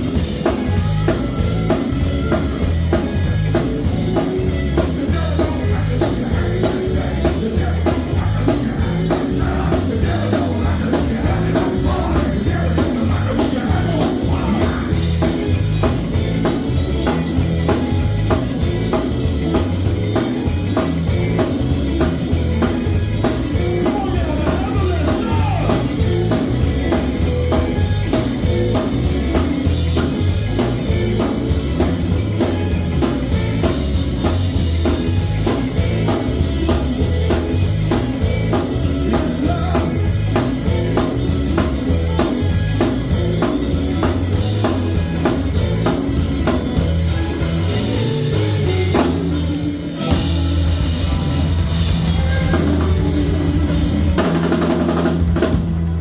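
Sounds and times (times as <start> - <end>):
bass line: 0.0 - 56.0
drum kit beat: 0.0 - 56.0
singing: 4.9 - 15.1.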